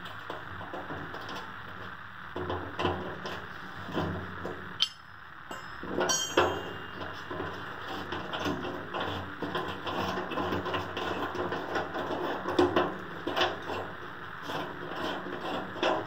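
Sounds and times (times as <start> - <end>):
metal clink with high ring: 4.8 - 7.0.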